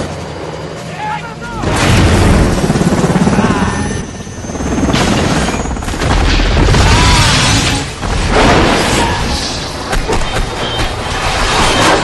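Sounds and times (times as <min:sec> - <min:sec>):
helicopter crash booms: 0:01.6 - 0:03.1, 0:04.8 - 0:09.4.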